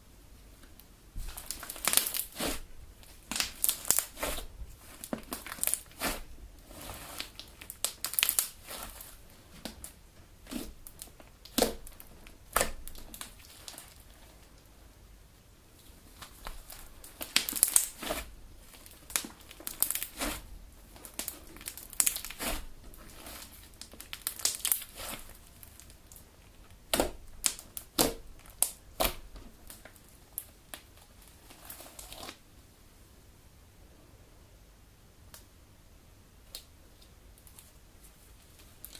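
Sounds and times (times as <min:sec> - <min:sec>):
slime popping and squelching: 0:01.2 - 0:14.0, 0:16.2 - 0:25.9, 0:26.8 - 0:29.9.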